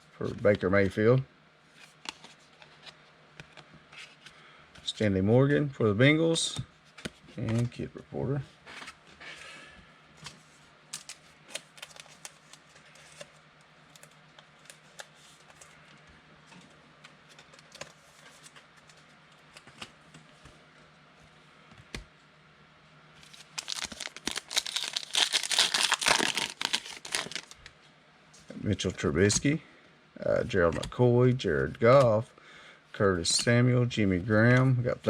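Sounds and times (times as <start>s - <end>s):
foil wrapper crinkling and tearing: 11.0s - 13.2s, 23.2s - 27.7s.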